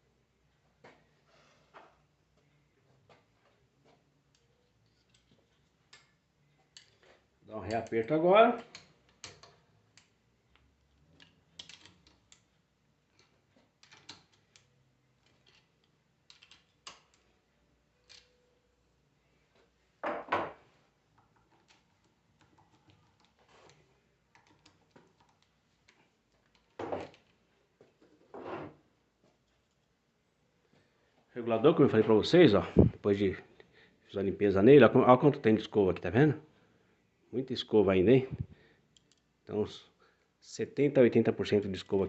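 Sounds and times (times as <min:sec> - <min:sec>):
small metal parts clinking: 0:10.8 - 0:17.3.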